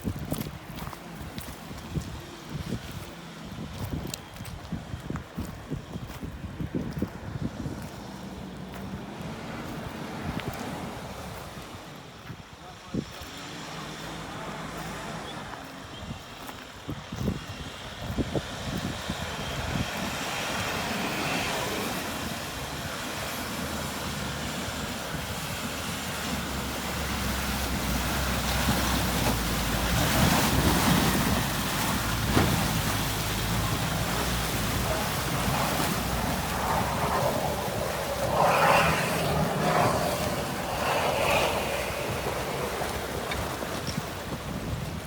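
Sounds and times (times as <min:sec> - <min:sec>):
rushing water or wind: 0:00.0 - 0:45.0
off-road vehicle engine under load: 0:13.4 - 0:45.0.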